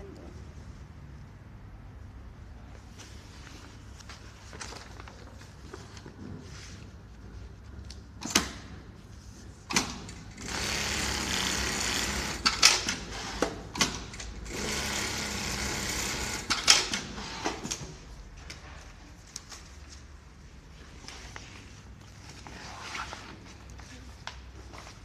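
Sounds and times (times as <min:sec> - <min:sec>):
sewing machine stitching: 0:10.3 - 0:13.3.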